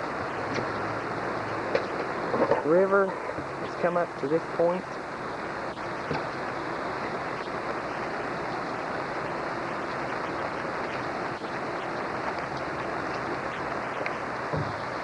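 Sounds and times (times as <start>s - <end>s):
river rushing: 0.0s - 15.0s
low thump: 14.5s - 14.8s.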